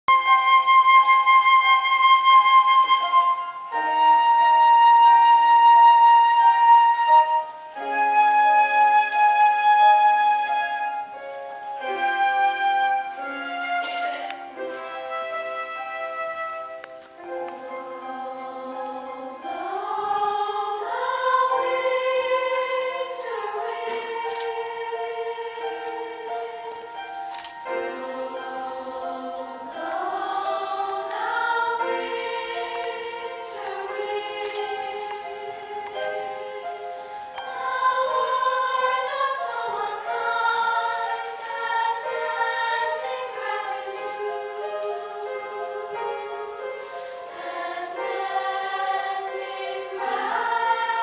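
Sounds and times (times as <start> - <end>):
flute-like held chords: 0.1 - 27.2
choir singing held chords: 9.6 - 51.0.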